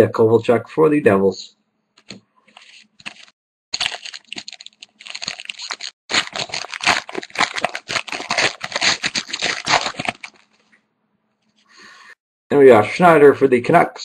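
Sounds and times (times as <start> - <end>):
wrapper tearing and crinkling: 2.6 - 10.6.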